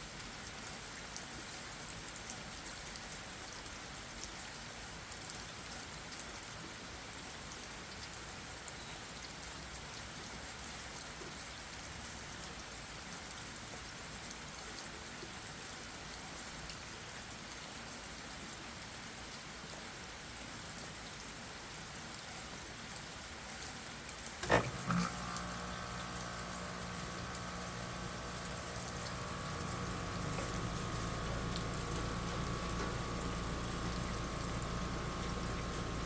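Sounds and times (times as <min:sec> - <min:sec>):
rain on leaves and ground: 0:00.0 - 0:24.4, 0:25.2 - 0:36.0
steady humming tone: 0:24.4 - 0:36.0.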